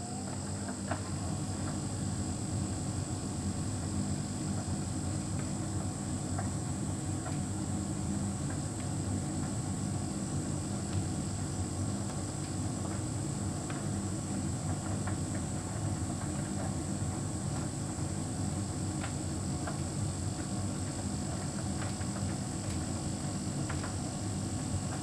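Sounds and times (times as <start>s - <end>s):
tumble dryer humming: 0.0s - 5.8s.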